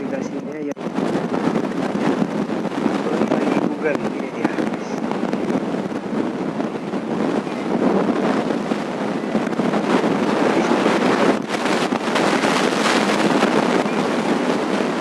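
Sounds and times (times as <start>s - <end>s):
loud steady rushing noise: 0.0s - 15.0s.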